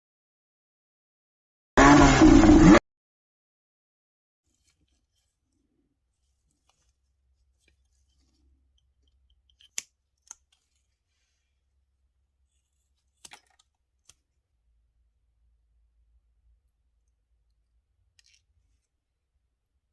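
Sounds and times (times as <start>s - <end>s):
faint scraping of parts: 4.5s - 11.7s.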